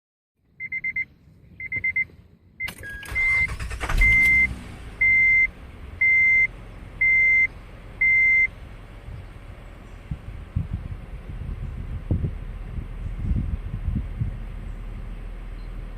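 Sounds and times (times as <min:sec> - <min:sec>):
dashboard warning chime: 0:00.6 - 0:08.5
car engine cranking and idling: 0:01.4 - 0:15.9.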